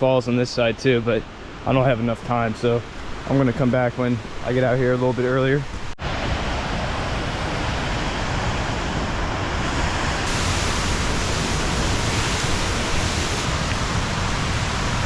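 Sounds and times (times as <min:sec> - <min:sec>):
waterfall rushing: 0:06.0 - 0:15.0.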